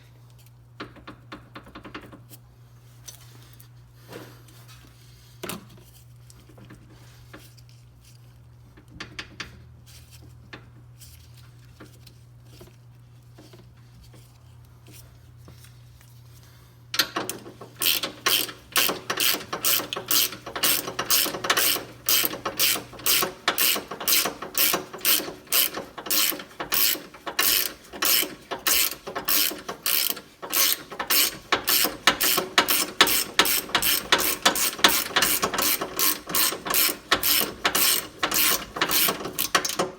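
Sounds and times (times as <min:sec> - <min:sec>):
ratchet wrench clicking: 0:17.0 - 0:39.9.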